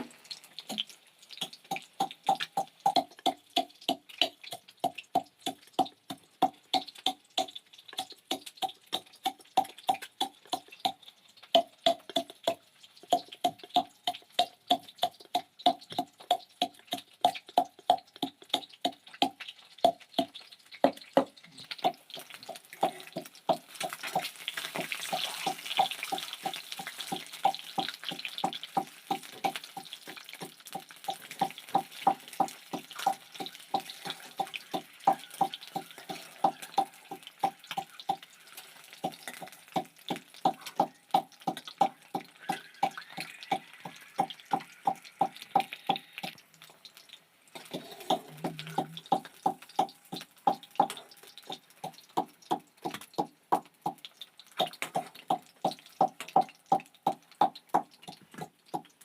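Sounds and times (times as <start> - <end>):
rhythmic ringing knocks: 25.1 - 38.2.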